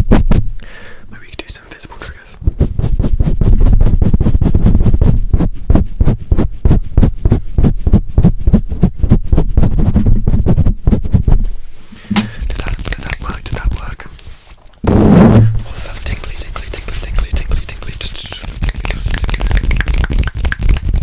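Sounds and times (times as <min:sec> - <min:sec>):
muffled thumps on microphone: 0:00.0 - 0:00.5, 0:02.4 - 0:12.4, 0:14.8 - 0:17.6.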